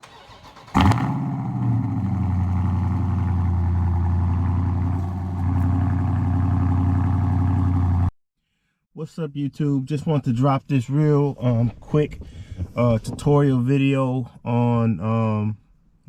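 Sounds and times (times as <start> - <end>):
car engine starting and idling: 0.0 - 8.1.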